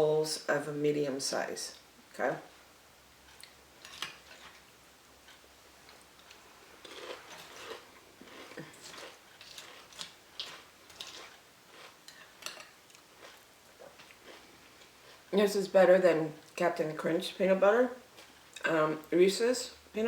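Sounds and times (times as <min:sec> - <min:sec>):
cereal crunching: 0:06.2 - 0:14.4.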